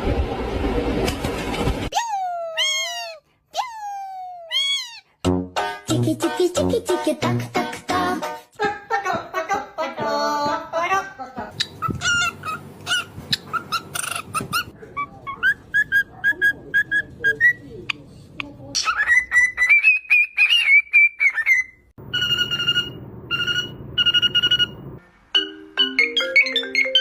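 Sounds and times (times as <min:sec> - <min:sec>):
parrot whistling: 0:11.6 - 0:17.7, 0:18.8 - 0:24.9.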